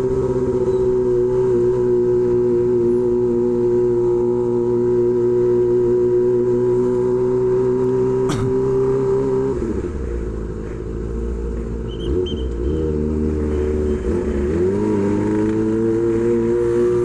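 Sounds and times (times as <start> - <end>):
motorcycle engine high-revving: 11.8 - 17.0.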